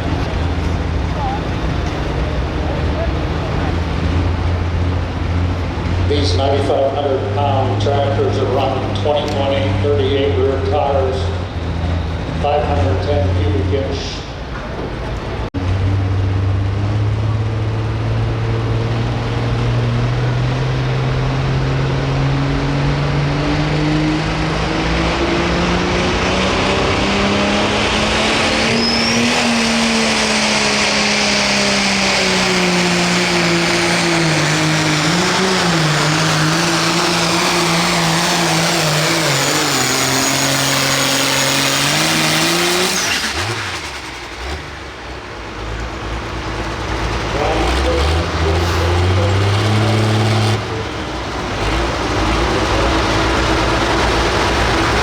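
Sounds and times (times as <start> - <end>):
tractor engine under load: 0.0 - 23.8, 27.2 - 55.0.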